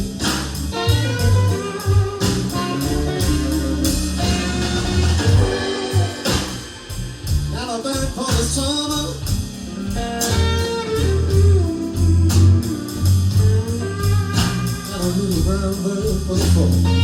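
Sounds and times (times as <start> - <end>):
electric guitar bending notes: 0.0 - 7.8, 9.8 - 15.0
bass and drums: 0.0 - 17.0.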